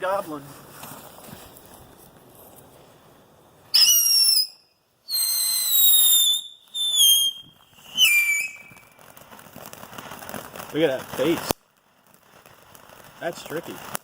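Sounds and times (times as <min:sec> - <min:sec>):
firework whistles: 0:03.6 - 0:14.0.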